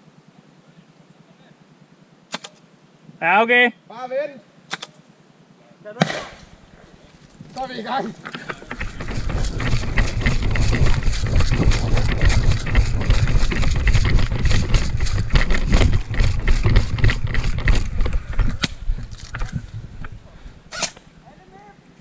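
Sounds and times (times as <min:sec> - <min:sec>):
sharp snap: 0:02.3 - 0:02.6, 0:04.7 - 0:05.0, 0:06.0 - 0:06.5
quick running footsteps: 0:06.3 - 0:20.6
wind rumble on microphone: 0:06.3 - 0:20.8
gear rattling: 0:06.4 - 0:21.1.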